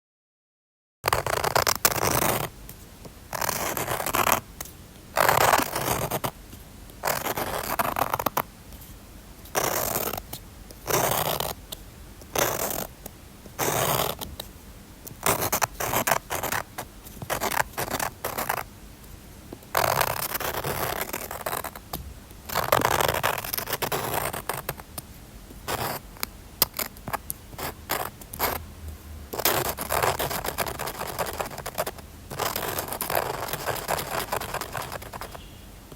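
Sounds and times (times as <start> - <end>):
drawing tool scratching paper: 1.1 - 2.5, 3.3 - 4.5, 5.2 - 6.4, 7.0 - 8.4, 9.5 - 11.6, 12.3 - 12.9, 13.6 - 14.3, 15.1 - 18.7, 19.7 - 21.9, 22.5 - 24.8, 25.6 - 28.6, 29.3 - 35.5.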